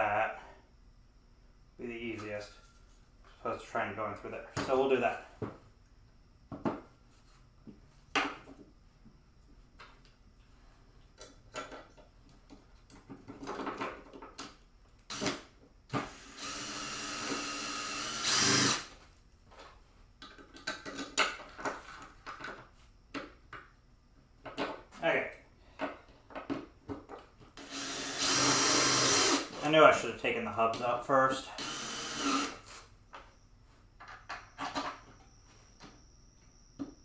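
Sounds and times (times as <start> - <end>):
tools and parts clattering: 11.1 - 14.6, 19.5 - 22.8
electric drill running: 16.1 - 18.9, 27.6 - 29.6, 31.6 - 32.6.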